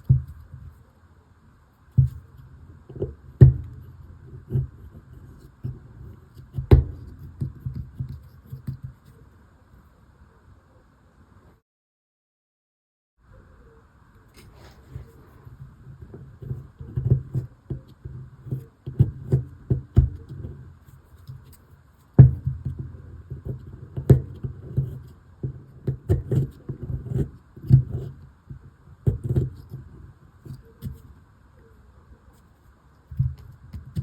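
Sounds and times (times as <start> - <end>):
tools tapping and scraping plaster: 0.0 - 0.8, 1.9 - 9.2, 14.9 - 31.2, 33.0 - 34.0.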